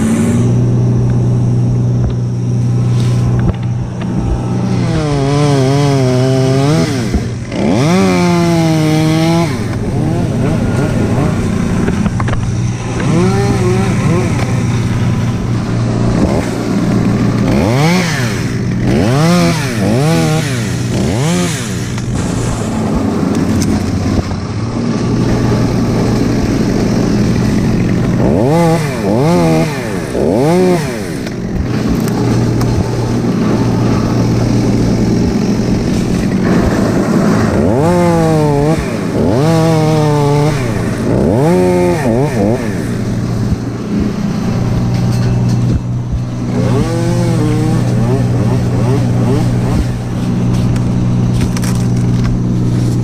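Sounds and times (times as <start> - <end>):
chainsaw cutting: 0.0 - 53.0
chainsaw revving: 0.0 - 53.0.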